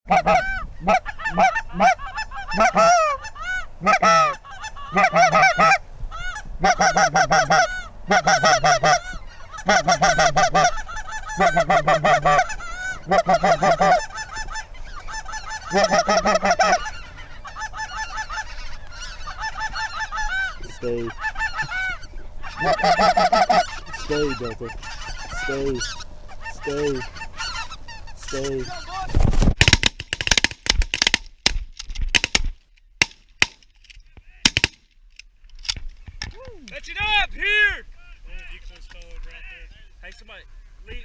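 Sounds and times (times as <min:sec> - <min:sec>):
geese honking: 0:00.1 - 0:29.3.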